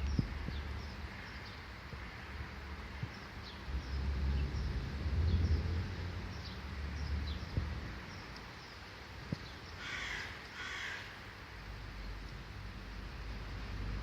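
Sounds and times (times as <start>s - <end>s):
crow cawing: 9.8s - 11.2s.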